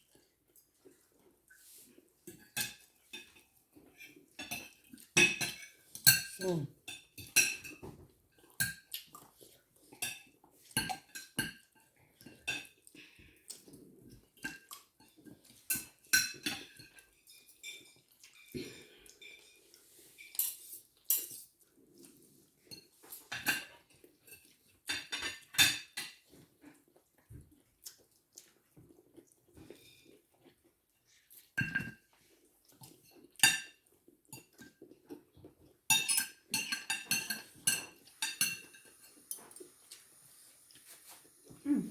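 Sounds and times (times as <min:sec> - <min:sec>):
cutlery clinking against plates: 0:02.2 - 0:09.3, 0:09.9 - 0:21.6, 0:22.5 - 0:26.8, 0:31.4 - 0:40.2.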